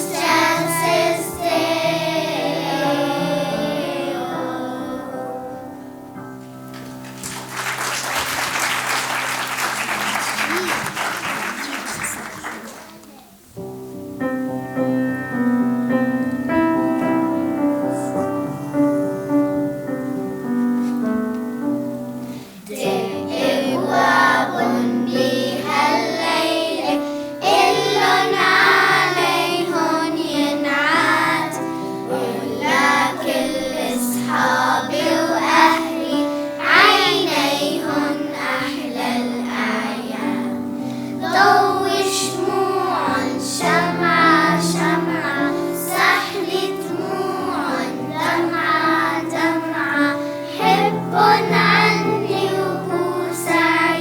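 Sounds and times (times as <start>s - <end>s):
children's choir singing: 0.0s - 13.5s, 14.2s - 54.0s
applause: 6.4s - 13.2s.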